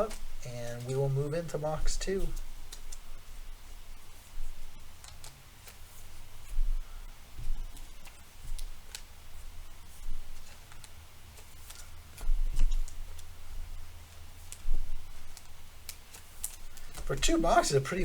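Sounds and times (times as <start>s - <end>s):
cards sliding into plastic sleeves: 5.0s - 6.2s, 9.9s - 13.3s.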